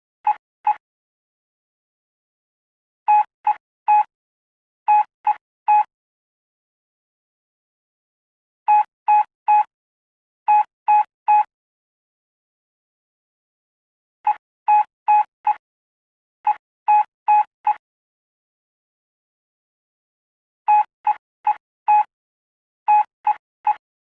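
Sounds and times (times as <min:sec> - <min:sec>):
morse code beeps: 0:03.1 - 0:04.1, 0:20.7 - 0:22.1.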